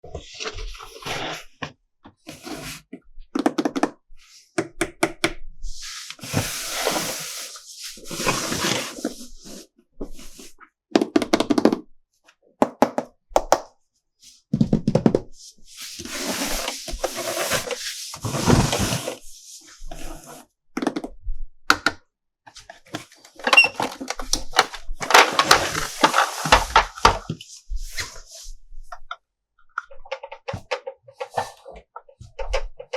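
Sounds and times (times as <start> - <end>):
packaging rustling and crinkling: 23.8 - 27.4.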